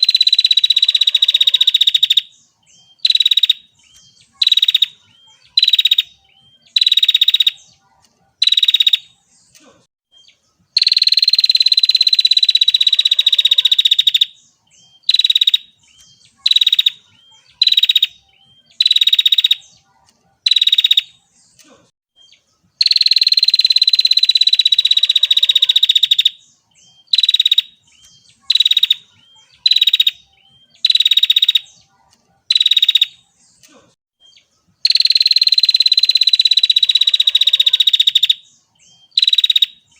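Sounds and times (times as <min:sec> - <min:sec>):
bird calling with buzzy notes: 0:22.2 - 0:31.9.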